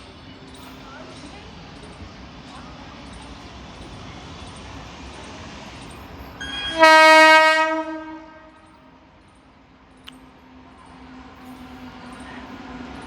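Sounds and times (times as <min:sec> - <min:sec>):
train horn blast: 0:06.4 - 0:08.7.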